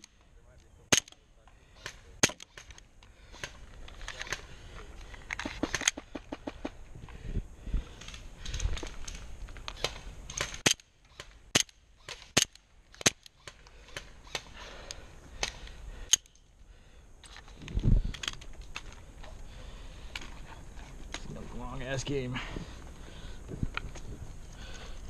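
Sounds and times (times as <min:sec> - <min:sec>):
airsoft guns firing: 0:05.4 - 0:06.8.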